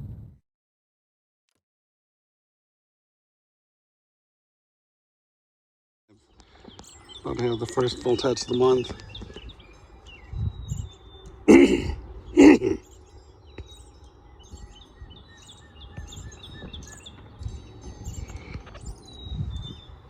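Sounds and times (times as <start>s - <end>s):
small birds chirping: 6.1s - 20.0s
person coughing: 11.5s - 12.8s.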